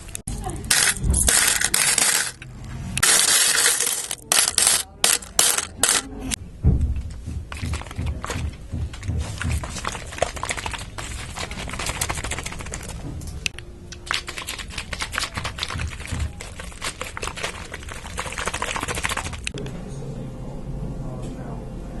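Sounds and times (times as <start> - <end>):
rapid clicking and tapping: 7.3 - 19.6.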